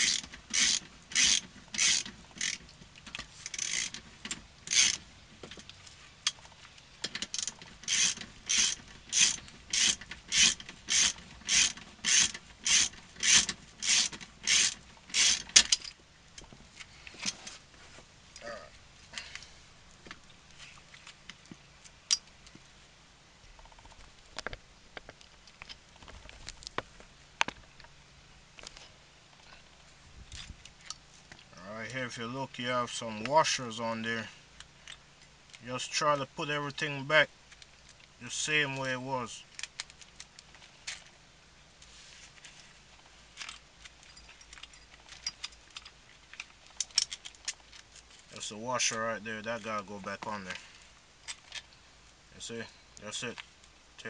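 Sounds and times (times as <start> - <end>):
ratchet wrench ratcheting: 0.0 - 2.7, 3.4 - 5.0, 7.0 - 15.9.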